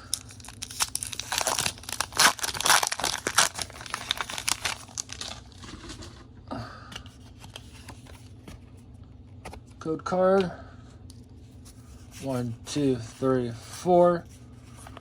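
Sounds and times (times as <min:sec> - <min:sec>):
foil wrapper tearing and crinkling: 0:00.0 - 0:05.8.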